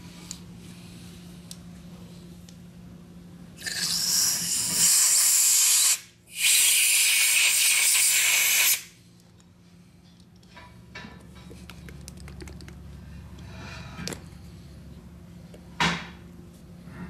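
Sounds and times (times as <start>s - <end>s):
air nozzle hissing blasts: 3.6s - 9.0s.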